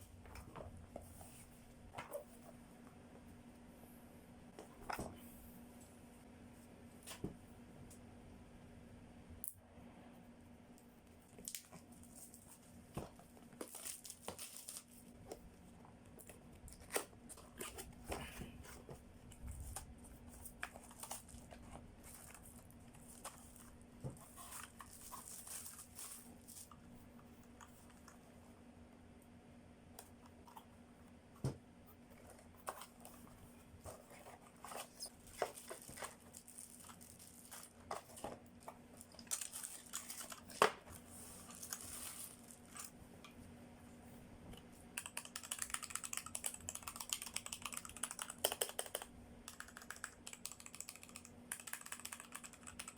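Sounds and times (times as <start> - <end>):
faint steady hum: 0.0 - 52.9
plastic wrap and paper crinkling: 13.5 - 15.2, 20.4 - 26.8, 33.9 - 43.0.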